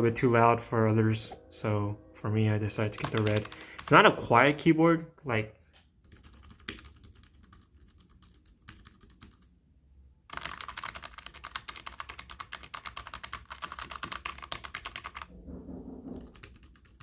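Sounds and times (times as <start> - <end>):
typing on mechanical keyboard: 2.9 - 3.9, 6.0 - 9.5, 10.3 - 15.3, 16.1 - 17.0.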